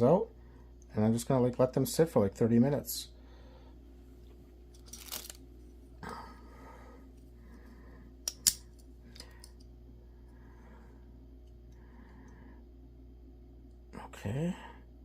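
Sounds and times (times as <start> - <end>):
faint steady hum: 0.0 - 15.0
rustle of handling: 4.1 - 5.8.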